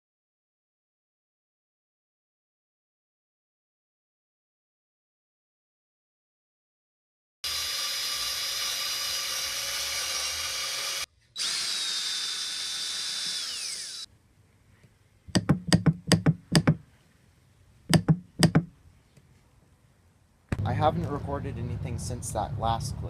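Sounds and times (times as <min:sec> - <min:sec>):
power drill whining: 0:07.4 - 0:14.1
sharp clicks or knocks: 0:15.3 - 0:16.8, 0:17.9 - 0:18.7.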